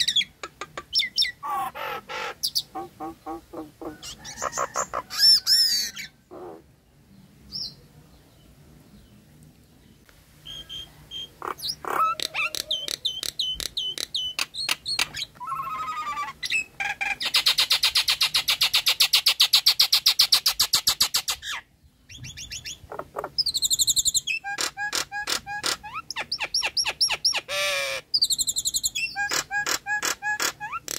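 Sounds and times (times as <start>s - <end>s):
myna singing whistles and squawks: 10.4s - 22.8s.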